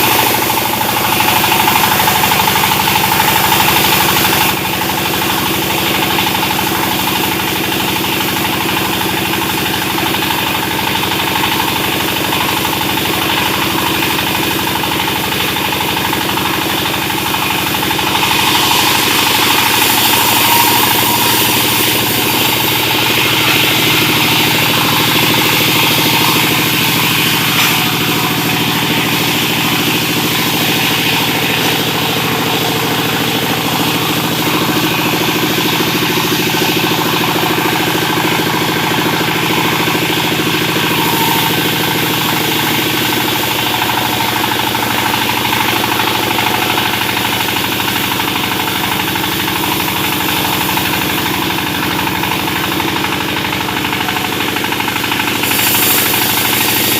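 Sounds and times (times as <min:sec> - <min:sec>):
sawmill machinery running: 0:00.0 - 0:56.9.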